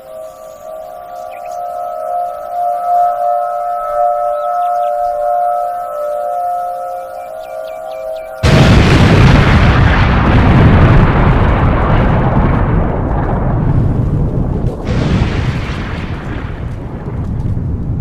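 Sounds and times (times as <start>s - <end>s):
low rumble: 7.3s - 18.0s
loud explosion: 8.4s - 18.0s.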